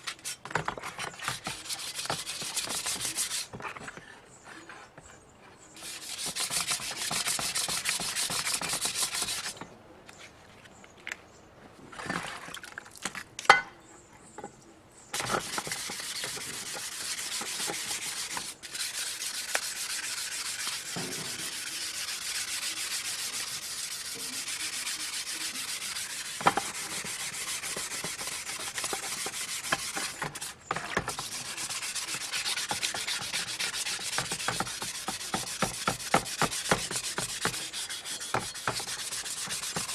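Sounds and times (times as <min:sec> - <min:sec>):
sandpaper rubbing on metal: 0:01.1 - 0:03.6, 0:05.8 - 0:09.6, 0:15.2 - 0:39.9.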